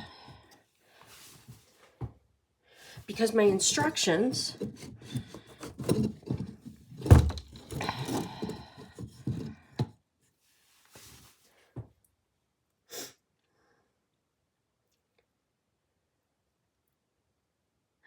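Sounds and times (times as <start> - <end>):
knocking and clattering: 3.7 - 9.9
heavy thunk: 7.0 - 8.4.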